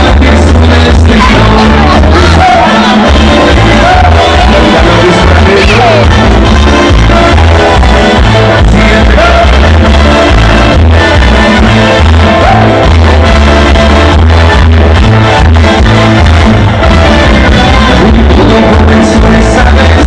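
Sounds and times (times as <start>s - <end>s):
person singing or shouting: 0.0s - 14.1s
loud music with heavy beat: 0.0s - 20.0s.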